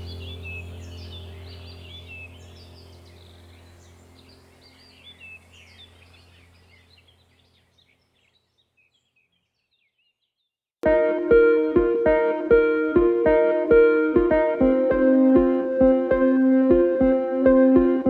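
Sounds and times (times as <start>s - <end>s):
low steady hum: 0.0s - 7.6s
small birds chirping: 0.0s - 10.6s.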